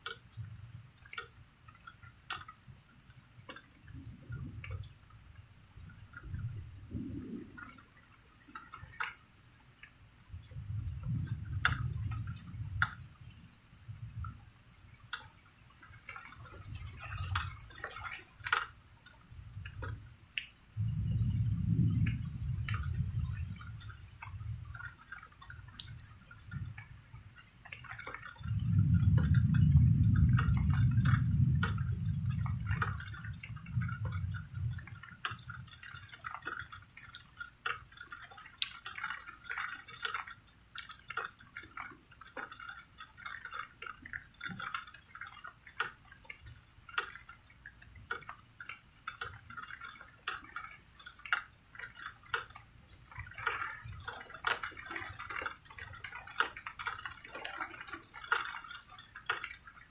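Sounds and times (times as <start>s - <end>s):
rain dripping and pattering: 0.0s - 59.9s
thunder rumble: 5.8s - 8.4s, 10.3s - 14.6s, 20.7s - 25.0s, 28.4s - 35.8s.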